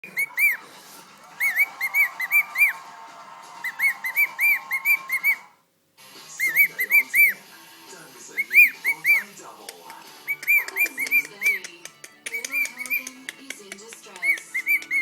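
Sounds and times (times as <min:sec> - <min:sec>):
cockatiel whistling: 0:00.0 - 0:05.6, 0:06.4 - 0:07.4, 0:08.3 - 0:09.3, 0:10.2 - 0:11.6, 0:14.2 - 0:15.0.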